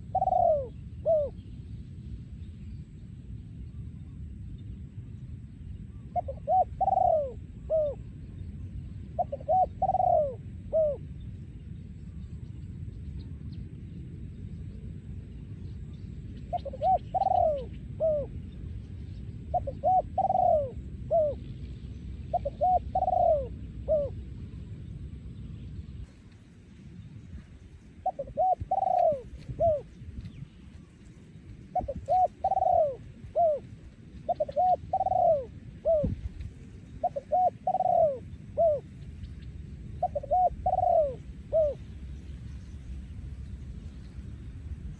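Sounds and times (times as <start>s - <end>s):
dove cooing: 0.0s - 1.4s, 6.1s - 8.1s, 9.1s - 11.1s, 16.5s - 18.5s, 19.5s - 24.3s, 27.4s - 39.2s, 39.9s - 42.1s
low background rumble: 0.0s - 44.9s.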